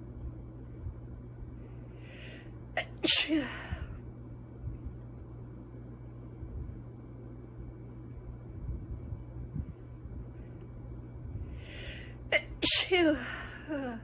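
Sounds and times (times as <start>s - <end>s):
woman's stifled sneeze: 2.8s - 3.7s, 12.3s - 14.0s.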